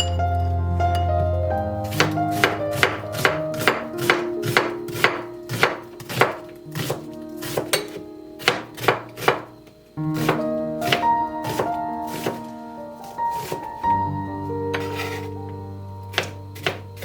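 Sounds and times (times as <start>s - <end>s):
soft background music: 0.0s - 17.0s
knife chopping on cutting board: 1.8s - 9.5s, 10.2s - 12.5s, 13.3s - 13.8s, 14.7s - 15.3s, 16.1s - 17.0s.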